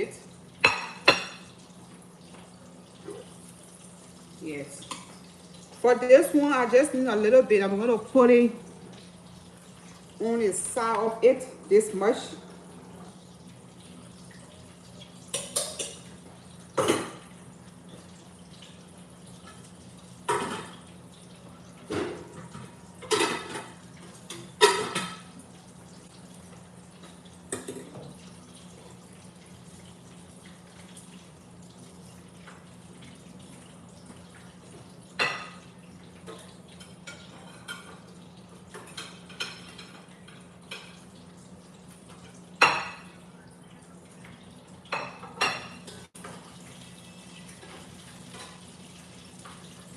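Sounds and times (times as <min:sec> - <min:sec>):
spoon and dishes clinking: 0:15.3 - 0:16.1.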